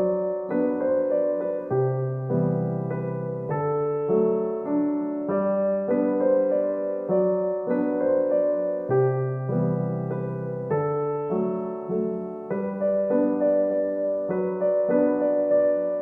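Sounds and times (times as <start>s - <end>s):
soft piano music: 0.0s - 16.0s.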